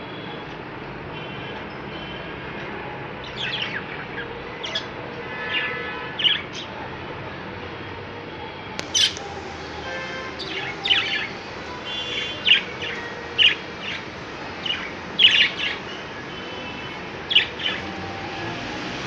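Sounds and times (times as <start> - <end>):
budgerigars chirping: 8.8 - 9.2.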